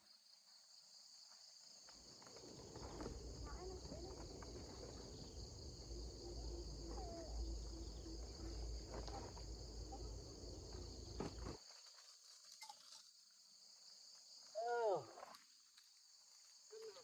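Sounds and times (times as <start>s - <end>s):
insects chirping: 0.0s - 17.0s.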